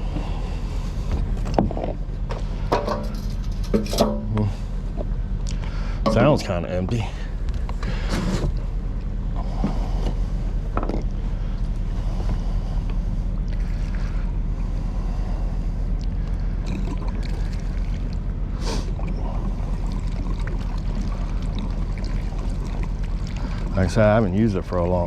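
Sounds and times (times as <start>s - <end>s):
engine idling: 0.0s - 25.0s.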